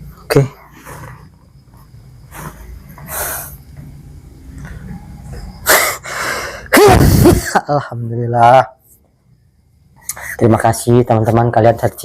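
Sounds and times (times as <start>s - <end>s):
soft breaths: 0.5s - 3.8s, 4.6s - 6.7s
man sneezing: 5.7s - 7.6s.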